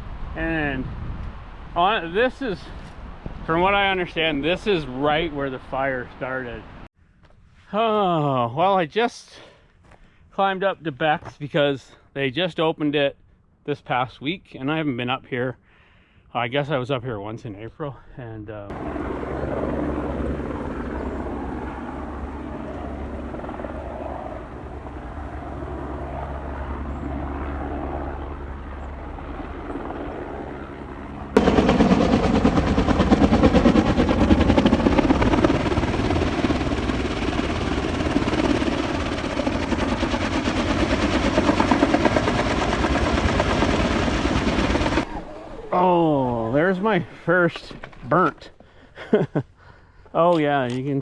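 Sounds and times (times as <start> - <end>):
wind buffeting camera: 0.0 - 5.2
wind rush: 0.0 - 6.9
electric bike motor drone: 18.7 - 31.4.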